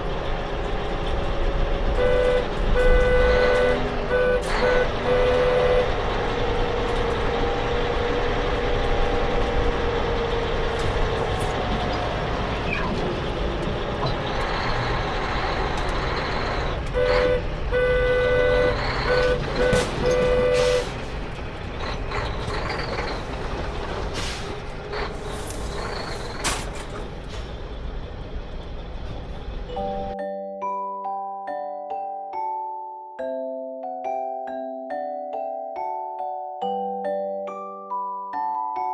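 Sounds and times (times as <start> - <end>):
vehicle rumble: 0.0 - 30.2.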